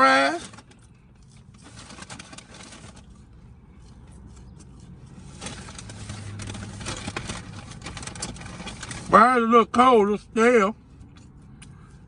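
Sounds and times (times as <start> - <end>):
person chewing food: 3.0 - 5.9.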